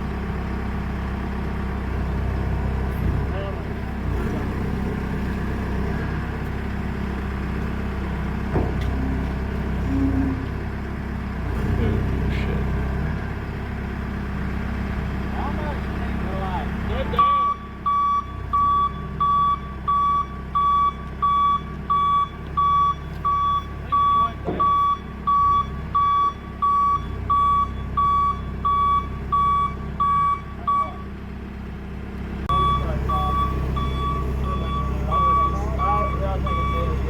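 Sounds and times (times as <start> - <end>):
forklift engine running: 0.0 - 37.0
reversing alarm beeping: 17.2 - 31.1, 32.5 - 37.0.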